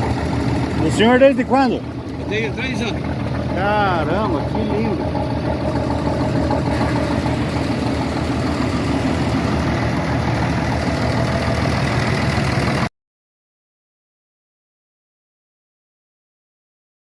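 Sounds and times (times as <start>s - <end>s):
truck engine idling: 0.0s - 12.9s.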